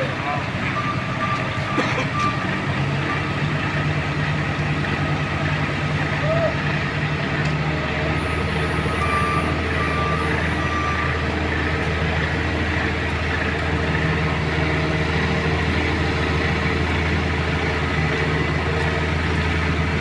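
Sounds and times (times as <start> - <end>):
heavy diesel engine running: 0.0 - 20.0.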